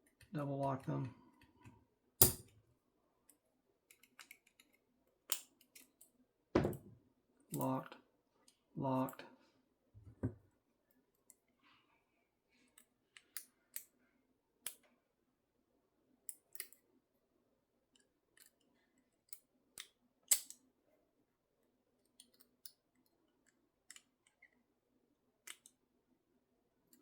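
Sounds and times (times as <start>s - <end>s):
lock picking metallic clicks: 2.2s - 2.5s, 3.9s - 6.1s, 16.3s - 16.8s, 19.3s - 20.6s, 25.4s - 25.8s.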